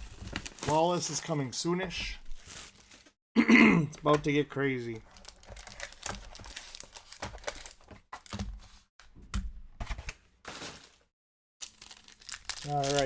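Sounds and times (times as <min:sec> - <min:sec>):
wrapper crinkling: 0:00.0 - 0:03.2, 0:04.8 - 0:08.3, 0:10.5 - 0:13.0.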